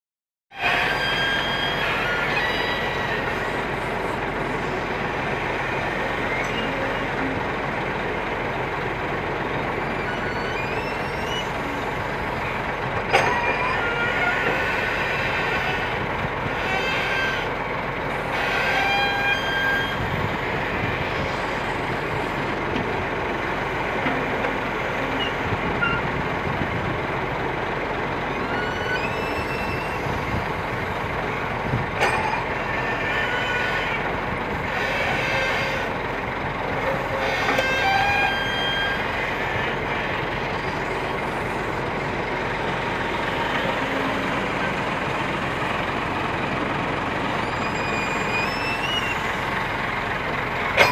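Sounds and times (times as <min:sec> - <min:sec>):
short high squeals: 0:00.5 - 0:07.5, 0:09.7 - 0:17.6, 0:18.2 - 0:22.4, 0:24.2 - 0:26.2, 0:28.3 - 0:30.5, 0:32.0 - 0:36.0, 0:36.8 - 0:45.2, 0:46.5 - 0:50.0
excavator engine and hydraulics drone: 0:00.5 - 0:50.9.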